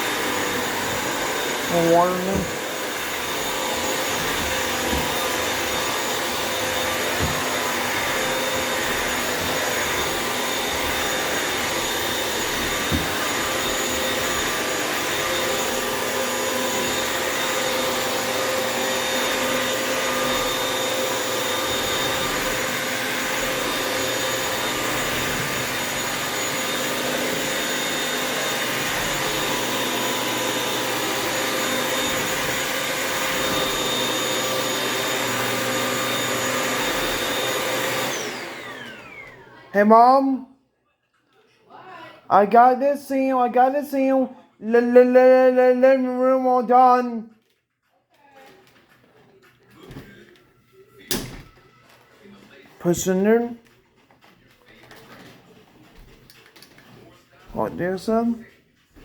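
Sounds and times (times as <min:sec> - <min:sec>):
vacuum mop motor whine: 0:00.0 - 0:39.7.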